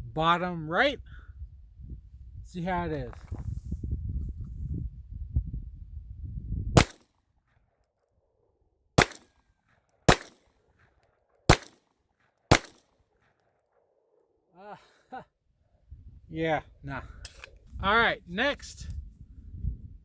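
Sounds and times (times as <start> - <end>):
pistol shots: 6.8 - 7.0, 9.0 - 9.3, 10.1 - 10.4, 11.5 - 11.8, 12.5 - 12.9.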